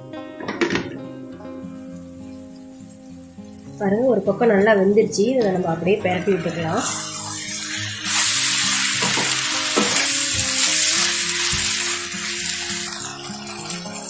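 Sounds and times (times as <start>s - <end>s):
background music: 0.0s - 14.0s
chicken sizzling in hot oil: 2.0s - 4.2s, 5.4s - 14.0s.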